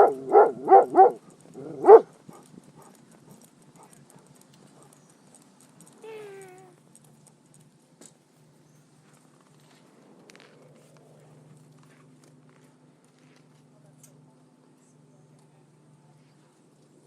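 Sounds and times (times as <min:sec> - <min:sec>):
dog barking: 0:00.0 - 0:03.0.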